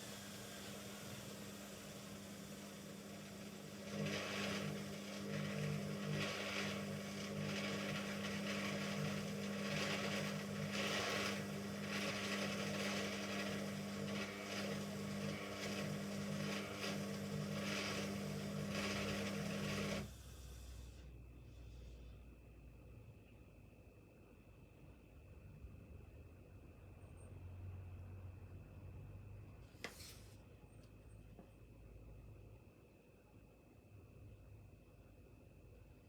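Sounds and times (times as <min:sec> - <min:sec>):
washing machine spinning: 0:00.0 - 0:20.3.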